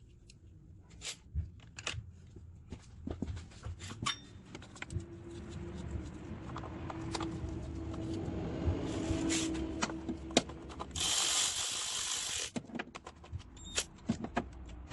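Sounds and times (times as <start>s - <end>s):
hand tools and metal parts clinking: 3.8s - 8.2s.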